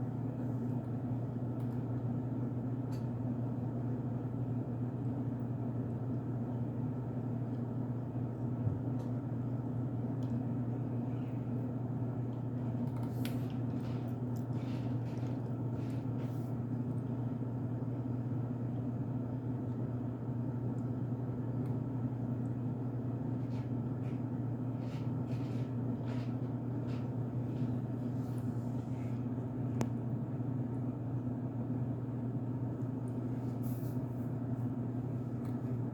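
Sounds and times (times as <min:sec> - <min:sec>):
steady low hum: 0:00.0 - 0:35.9
cornstarch being chewed: 0:12.6 - 0:17.2.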